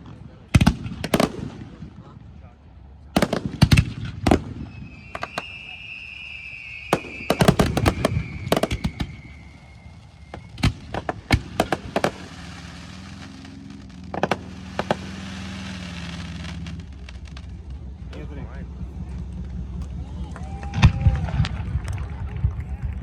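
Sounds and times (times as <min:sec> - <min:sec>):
firework bangs and crackles: 0:00.0 - 0:23.0
firework whistle: 0:04.4 - 0:17.6.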